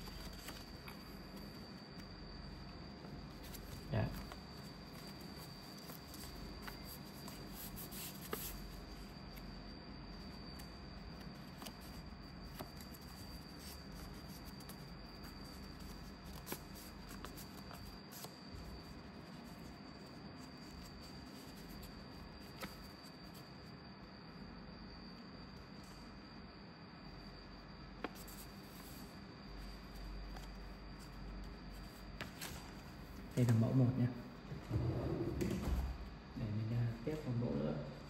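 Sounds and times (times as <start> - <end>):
paper rustling and creasing: 0.0 - 2.1, 3.0 - 9.1, 10.2 - 23.4.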